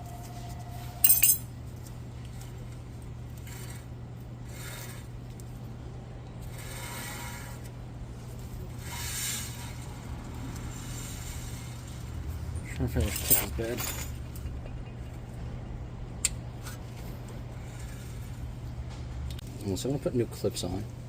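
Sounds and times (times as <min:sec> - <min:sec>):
metal brake parts clinking: 0:01.0 - 0:01.5, 0:12.9 - 0:14.3.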